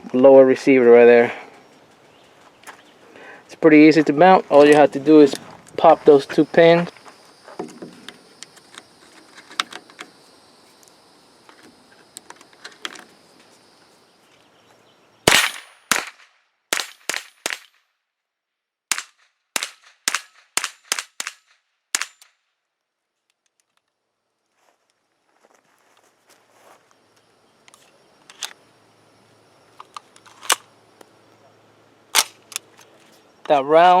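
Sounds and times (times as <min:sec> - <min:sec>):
rifle shots: 0:15.3 - 0:17.8, 0:18.9 - 0:22.3.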